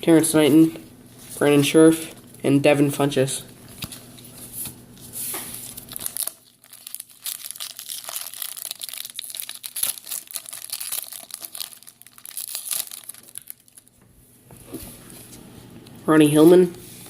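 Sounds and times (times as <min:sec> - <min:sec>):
foil wrapper crinkling and tearing: 0:05.5 - 0:14.0.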